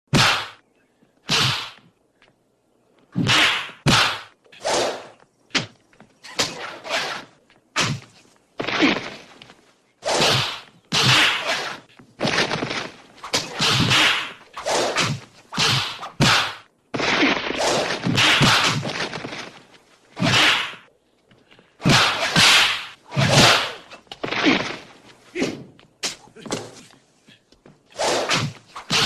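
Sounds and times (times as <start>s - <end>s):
whip-like swishes: 3.2s - 5.2s, 6.3s - 8.1s, 10.0s - 16.7s, 17.5s - 19.6s, 20.2s - 20.8s, 21.8s - 24.9s, 27.9s - 29.0s.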